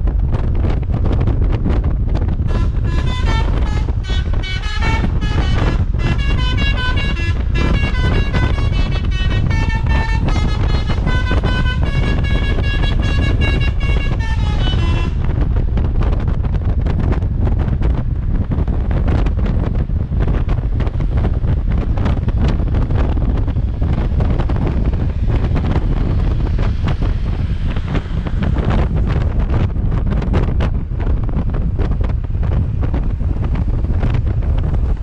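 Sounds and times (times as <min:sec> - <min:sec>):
low rumble: 0:00.0 - 0:35.0
wind buffeting microphone: 0:00.0 - 0:35.0
bus horn playing melody: 0:02.5 - 0:15.4.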